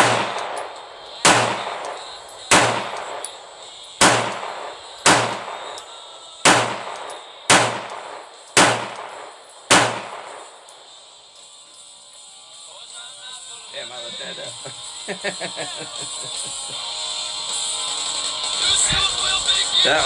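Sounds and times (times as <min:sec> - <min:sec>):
pistol shots with echo: 0:00.0 - 0:11.0.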